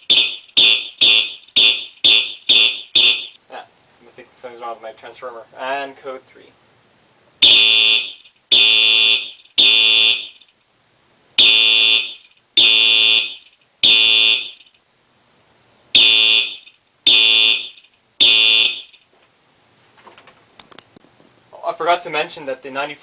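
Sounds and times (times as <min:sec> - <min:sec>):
high-pitched electronic horn blasts: 0:00.0 - 0:03.4, 0:07.4 - 0:10.4, 0:11.4 - 0:14.6, 0:16.0 - 0:18.9.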